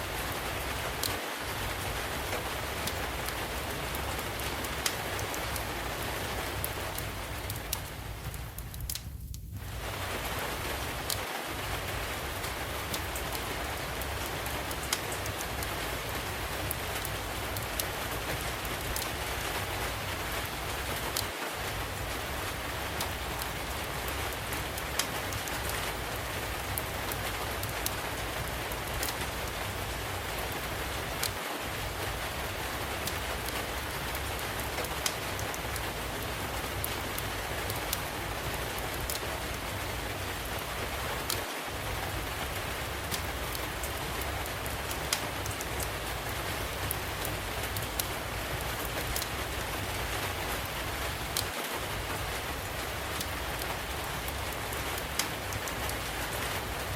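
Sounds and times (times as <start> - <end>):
steady rain hiss: 0.0 - 56.9
wood fire crackling: 0.0 - 56.9.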